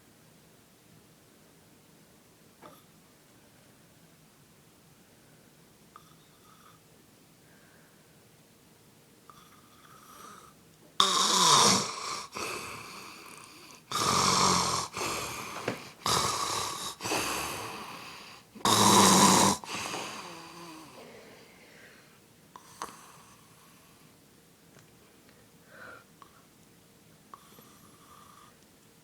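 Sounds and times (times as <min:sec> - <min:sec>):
man snoring loudly: 0:09.3 - 0:21.0.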